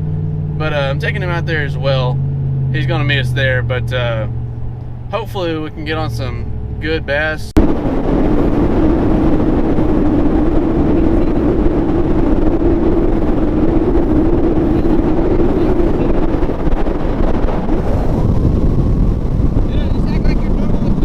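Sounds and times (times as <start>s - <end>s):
outboard engine droning: 0.0s - 21.0s
wind buffeting microphone: 0.0s - 21.0s.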